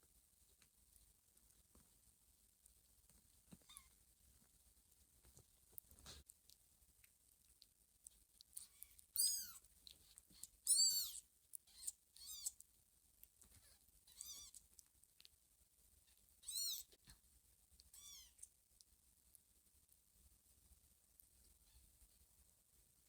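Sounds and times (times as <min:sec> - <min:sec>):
kitten meowing: 0:03.6 - 0:03.9, 0:08.6 - 0:09.6, 0:10.4 - 0:12.6, 0:14.1 - 0:14.6, 0:16.4 - 0:17.0, 0:17.9 - 0:18.5.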